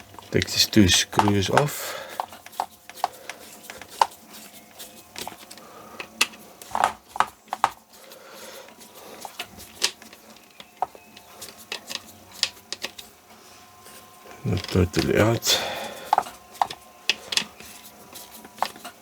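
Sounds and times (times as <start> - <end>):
screwdriver clicking on screws: 0.2 - 3.2.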